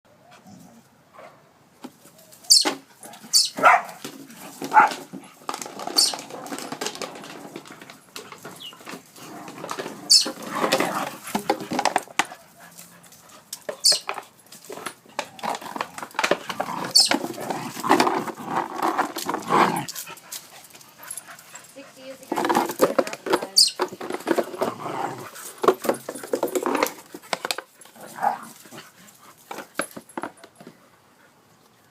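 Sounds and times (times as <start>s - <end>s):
dogs playing noisily: 0.2s - 31.9s
dogs barking: 3.5s - 4.0s, 4.7s - 5.0s.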